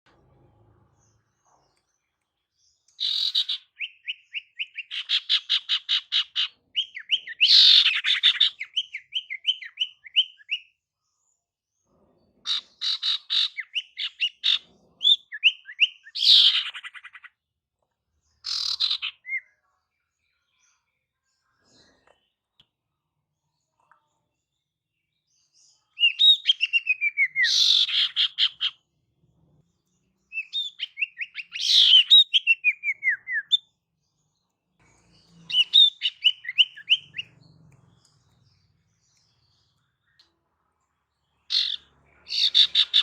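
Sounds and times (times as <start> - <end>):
songbird chirping: 0.0 - 43.0
harsh scratchy bird calls: 3.0 - 10.6, 12.4 - 17.3, 18.4 - 19.4, 26.0 - 28.9, 30.3 - 33.7, 34.8 - 39.8, 41.4 - 43.0.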